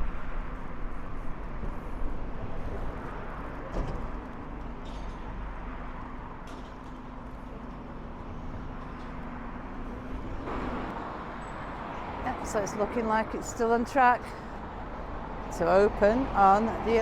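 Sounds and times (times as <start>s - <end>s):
cars driving past: 0.0s - 17.0s.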